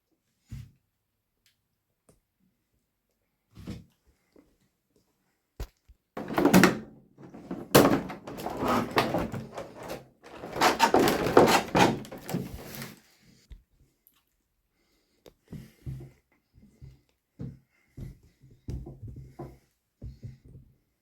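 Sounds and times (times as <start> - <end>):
cardboard and plastic rustling: 6.2 - 13.1.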